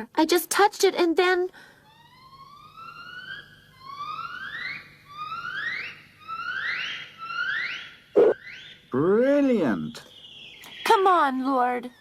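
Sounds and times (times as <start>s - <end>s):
electronic rising whooping tones: 8.2s - 8.4s.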